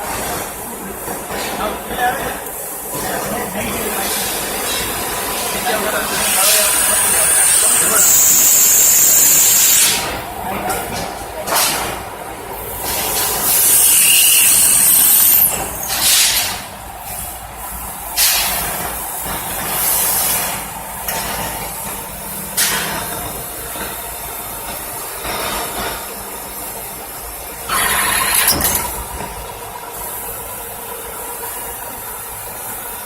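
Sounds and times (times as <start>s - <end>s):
machine humming: 27.6s - 29.5s.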